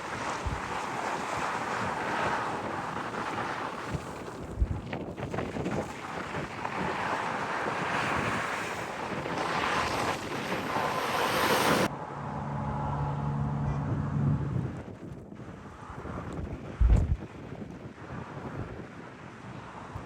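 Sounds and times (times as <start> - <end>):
wind buffeting microphone: 0.0 - 11.9, 13.7 - 20.0.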